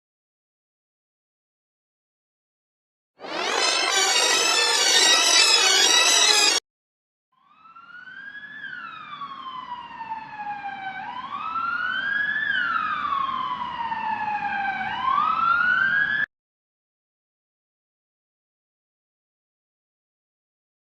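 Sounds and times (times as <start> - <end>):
emergency vehicle siren wailing: 3.2 - 6.6, 7.4 - 16.3.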